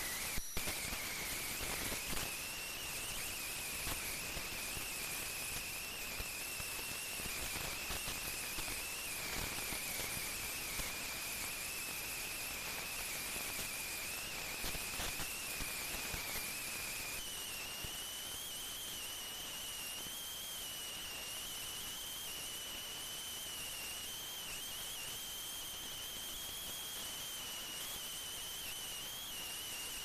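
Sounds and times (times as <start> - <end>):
crackling hiss: 0.0 - 30.0
machinery high-pitched whine: 0.0 - 30.0.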